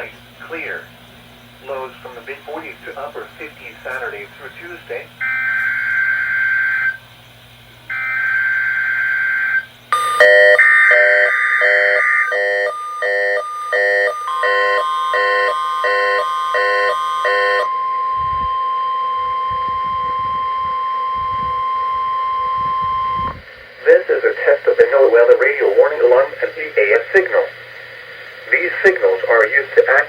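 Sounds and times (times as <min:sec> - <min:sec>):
steady warning alarm tone: 0:00.0 - 0:27.6
harsh buzzing data bursts: 0:00.0 - 0:30.0
alert beeps: 0:10.0 - 0:23.3.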